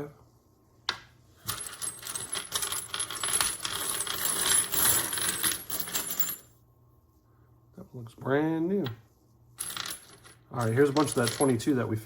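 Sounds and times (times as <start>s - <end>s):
brass casings clinking and rattling: 1.4s - 6.6s, 9.6s - 11.6s.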